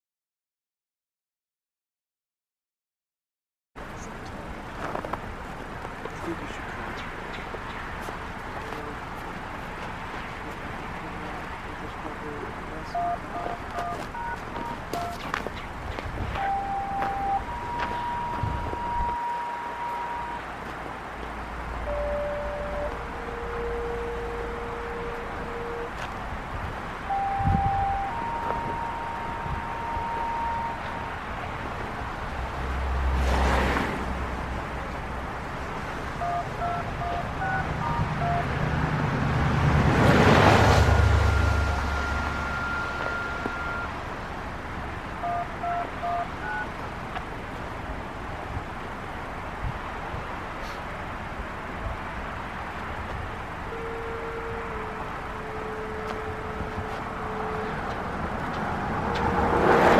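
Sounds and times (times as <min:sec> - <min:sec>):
car passing: 0:03.8 - 0:59.9
road traffic: 0:03.8 - 0:59.9
outdoor warning siren: 0:12.8 - 0:20.7, 0:21.5 - 0:33.1, 0:35.4 - 0:44.2, 0:45.1 - 0:46.8, 0:53.6 - 0:59.9
short beeps at changing pitches: 0:12.9 - 0:15.3, 0:16.4 - 0:20.5, 0:21.8 - 0:26.1, 0:27.0 - 0:31.3, 0:36.2 - 0:39.0, 0:40.8 - 0:44.0, 0:45.2 - 0:46.7
steady electronic tone: 0:16.4 - 0:20.6, 0:21.8 - 0:26.1, 0:27.0 - 0:31.5, 0:40.6 - 0:44.0.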